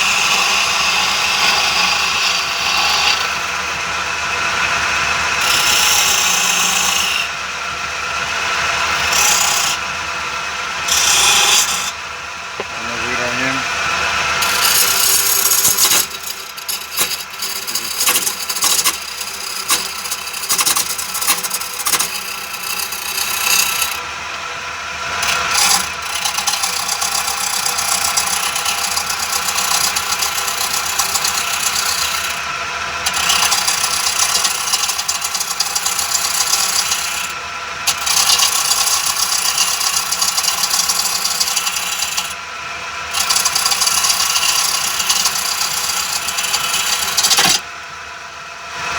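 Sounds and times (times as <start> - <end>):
chisel scraping wood on lathe: 0.0 - 3.6, 5.4 - 7.4, 8.6 - 9.9, 10.8 - 12.0, 12.6 - 24.1, 25.1 - 42.4, 43.1 - 47.6
lathe motor whine: 0.0 - 48.9.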